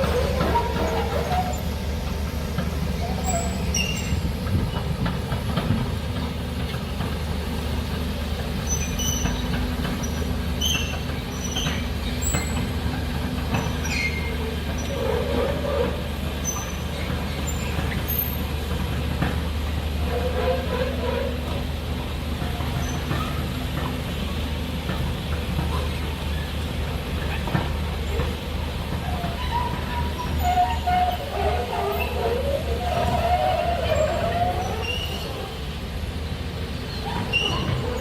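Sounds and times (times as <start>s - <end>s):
heavy machinery rumbling: 0.0s - 38.0s
high-pitched metallic squeaks: 3.0s - 4.2s, 29.1s - 35.6s.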